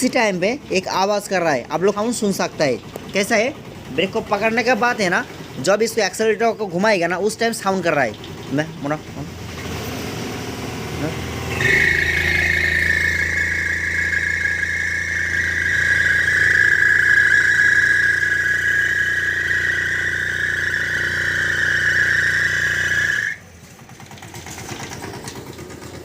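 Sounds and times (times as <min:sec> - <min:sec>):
scooter engine running: 0:00.0 - 0:26.0
high belt squeal: 0:11.5 - 0:23.4.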